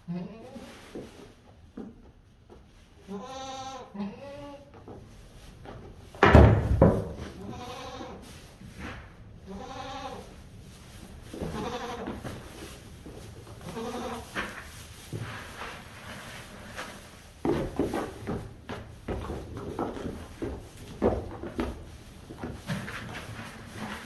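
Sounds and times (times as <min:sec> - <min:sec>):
loud thump: 0:06.2 - 0:07.3
goats bleating: 0:07.4 - 0:08.2, 0:09.5 - 0:10.3, 0:11.4 - 0:12.2, 0:13.6 - 0:14.4.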